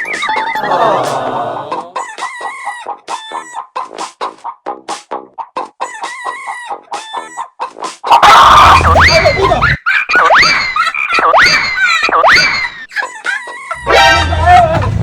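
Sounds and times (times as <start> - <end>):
swooping electronic calls: 0.0 - 1.0, 8.2 - 12.8
electronic clucking toy: 0.0 - 4.4, 5.4 - 14.8
loud electronic burst: 8.6 - 9.7.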